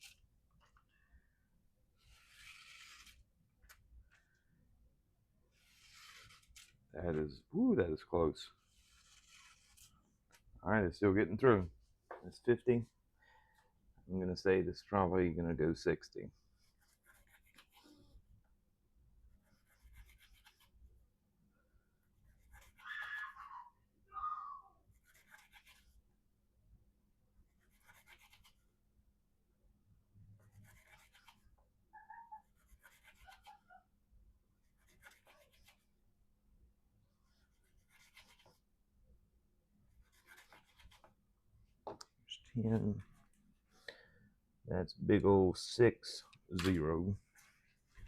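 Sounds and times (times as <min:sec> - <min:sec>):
knife slicing paper: 0:02.0 - 0:03.2, 0:05.6 - 0:06.8, 0:08.6 - 0:10.0, 0:40.0 - 0:41.1.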